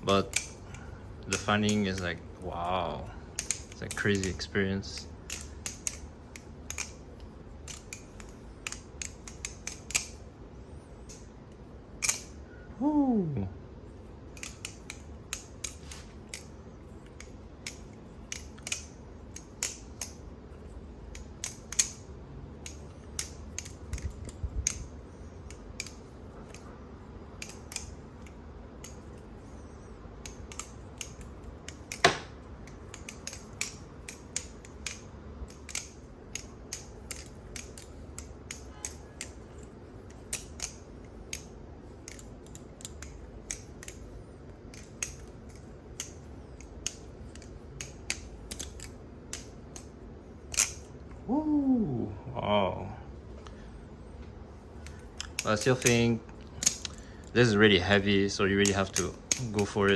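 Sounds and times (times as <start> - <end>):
butterfly knife clacking: 1.3 - 2.2.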